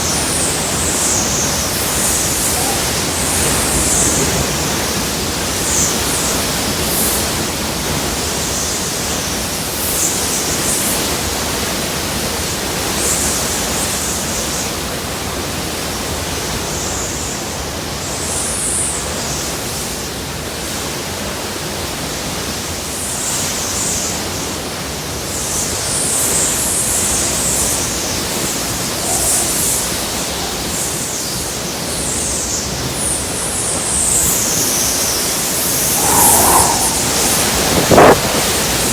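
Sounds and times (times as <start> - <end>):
strong wind gusting: 35.4 - 38.9.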